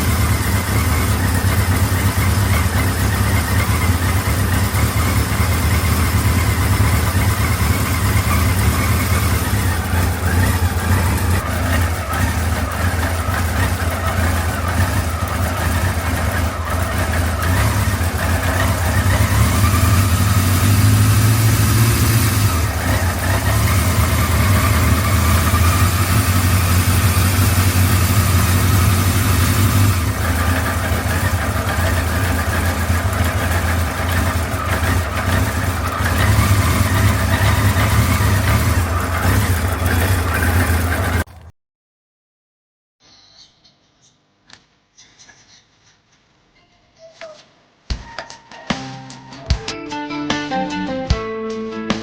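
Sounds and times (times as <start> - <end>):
engine clattering: 0.0 - 41.5
motorcycle engine idling: 0.0 - 41.5.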